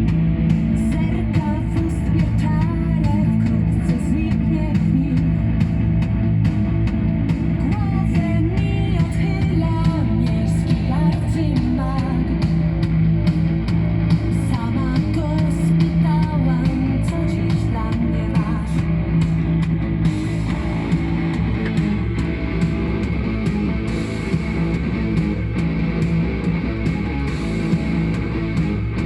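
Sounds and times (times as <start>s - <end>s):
drums: 0.0s - 29.0s
electric guitar: 0.0s - 29.0s
rock song on hi-fi: 0.0s - 29.0s
person singing: 0.7s - 5.6s, 7.6s - 12.6s, 14.2s - 19.2s.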